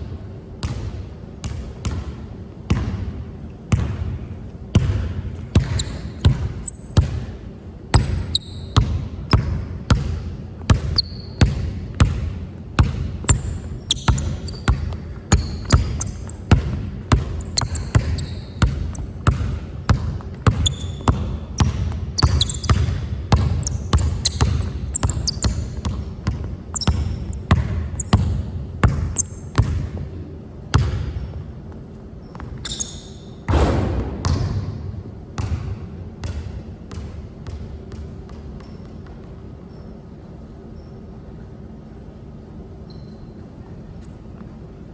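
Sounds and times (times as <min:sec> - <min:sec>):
basketball dribbled on hard court: 0:00.6 - 0:03.1, 0:03.7 - 0:30.1, 0:30.7 - 0:31.3, 0:32.3 - 0:39.2
short high squeaks: 0:05.6 - 0:06.9, 0:08.0 - 0:08.8, 0:10.9 - 0:11.4, 0:13.2 - 0:16.5, 0:17.4 - 0:19.2, 0:20.6 - 0:21.2, 0:22.1 - 0:22.8, 0:23.6 - 0:25.7, 0:26.7 - 0:28.2, 0:32.6 - 0:33.4, 0:42.9 - 0:43.4.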